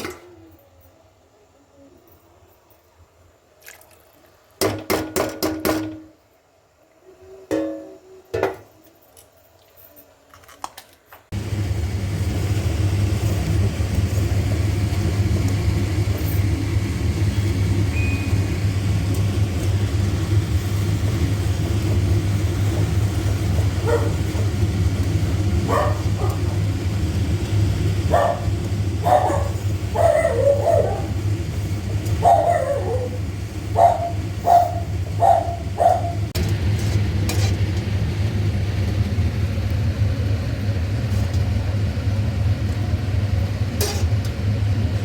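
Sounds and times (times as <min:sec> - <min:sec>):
electric mixer grinder running: 0:11.3 - 0:40.0.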